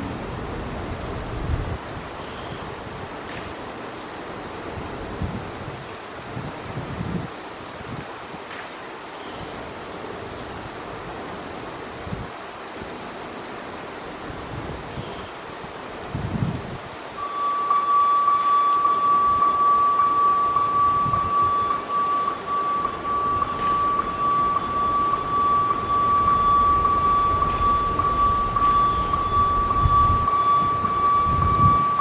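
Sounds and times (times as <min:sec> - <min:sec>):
low traffic rumble: 0:00.0 - 0:32.0
level crossing warning alarm: 0:17.2 - 0:32.0.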